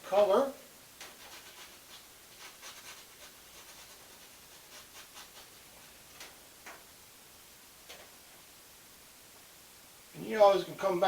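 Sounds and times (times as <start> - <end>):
paintbrush scratching on canvas: 1.0 - 6.0.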